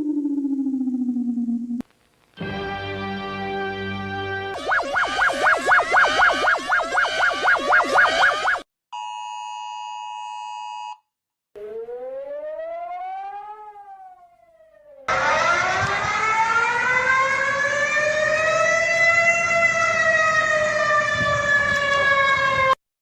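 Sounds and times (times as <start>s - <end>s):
warning siren wailing: 0.0s - 1.8s, 4.6s - 8.6s, 11.6s - 22.8s.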